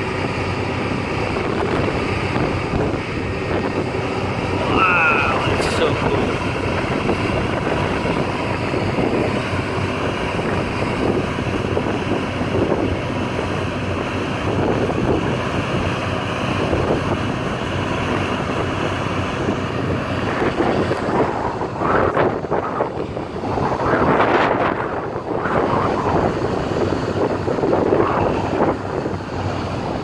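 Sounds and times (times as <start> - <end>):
strong wind buffeting microphone: 0.0 - 30.0.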